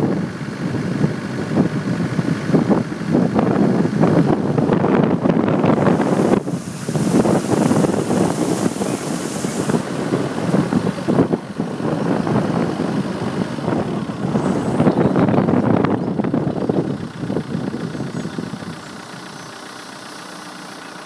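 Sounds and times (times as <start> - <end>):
wind buffeting microphone: 0.0 - 19.1
car engine running: 0.0 - 21.0
hiss of spray: 5.8 - 11.0.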